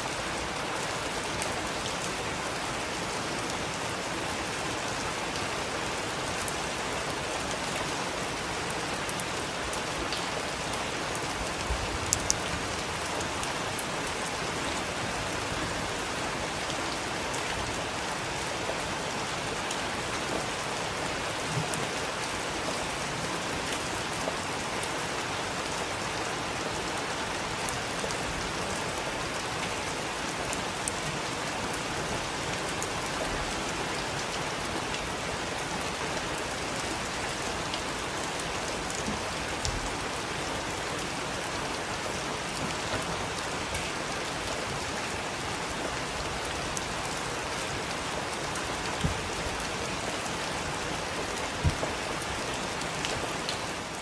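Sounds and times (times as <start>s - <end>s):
raindrops striking: 47.8s - 54.0s.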